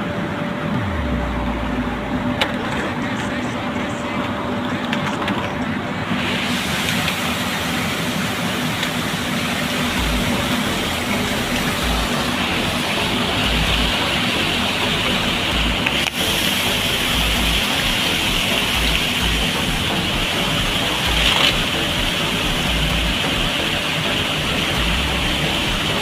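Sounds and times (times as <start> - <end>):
water spraying and falling: 6.2 - 26.0.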